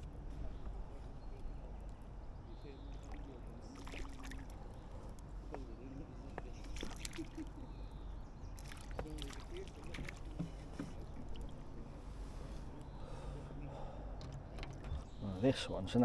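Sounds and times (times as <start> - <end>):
pond water splashing and dripping: 3.0 - 4.8, 6.6 - 7.6, 8.6 - 11.6.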